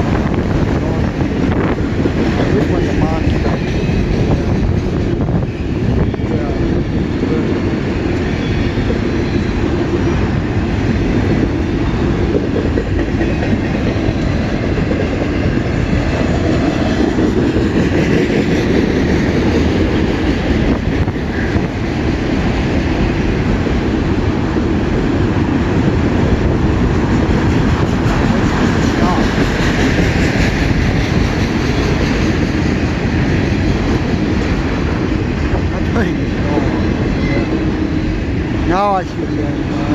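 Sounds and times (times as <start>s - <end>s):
freight train wheels clacking on rails: 0.0s - 39.9s.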